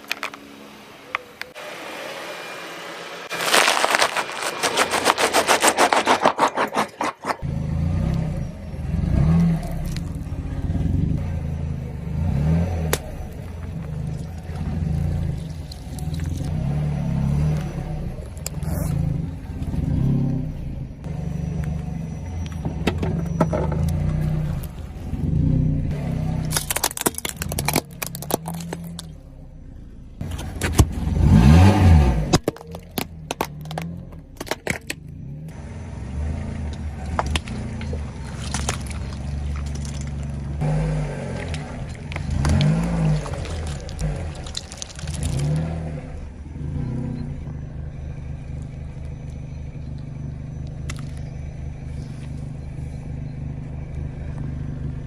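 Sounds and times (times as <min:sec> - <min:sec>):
car engine running: 0:00.0 - 0:55.0
things crushed under tyres: 0:03.3 - 0:07.4, 0:26.4 - 0:29.2, 0:30.2 - 0:35.0, 0:37.1 - 0:46.2
sharp cracks: 0:26.4 - 0:29.1.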